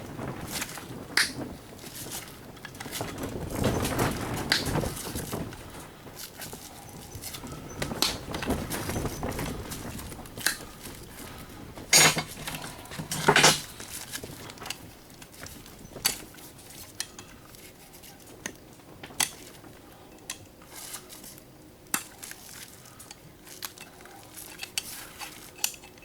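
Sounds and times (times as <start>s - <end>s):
metal parts clicking and rattling: 0.5s - 17.3s, 22.0s - 26.0s
metal parts clattering: 11.9s - 14.8s.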